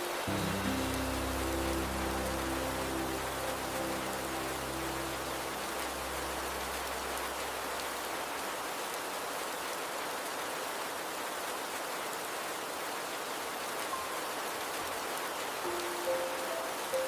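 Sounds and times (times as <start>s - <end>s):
river flowing: 0.0s - 17.0s
steady rain falling: 0.0s - 17.0s
low hum: 0.3s - 8.4s.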